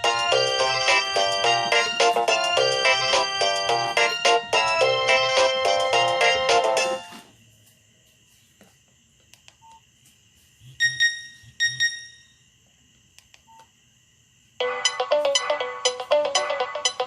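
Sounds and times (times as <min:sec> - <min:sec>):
polyphonic ringtone: 0:00.0 - 0:07.0, 0:10.8 - 0:12.4, 0:14.6 - 0:17.0
phone keypad beeps: 0:10.8 - 0:12.2.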